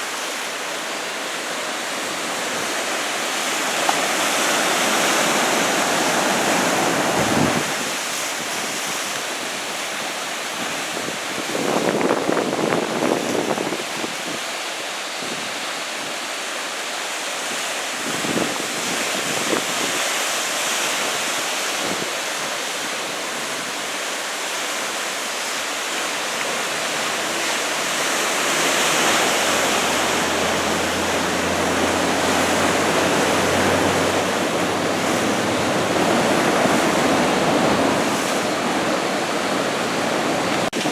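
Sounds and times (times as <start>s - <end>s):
ocean surf breaking: 0.0s - 13.6s, 17.4s - 40.9s.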